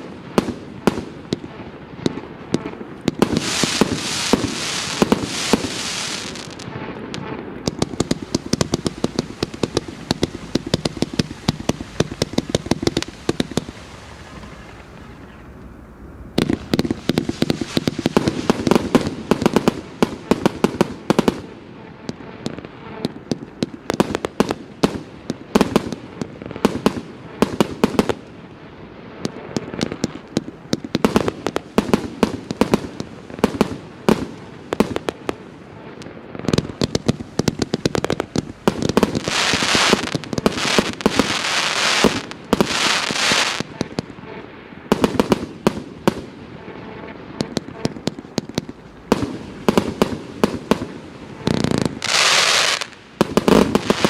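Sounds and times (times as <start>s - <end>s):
hissing firework crackle: 0.0s - 54.0s
firework cake shots and bursts: 16.4s - 21.5s.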